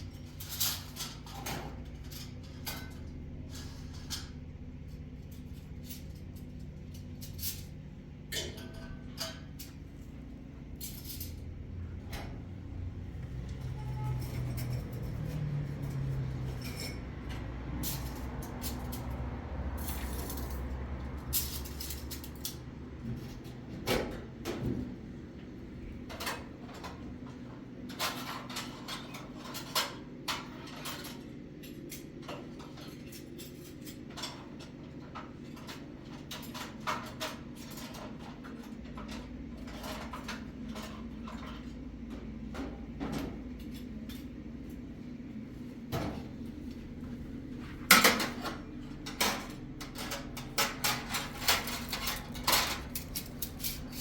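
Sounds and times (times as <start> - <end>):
metal clanks and knocks: 47.8 - 54.0.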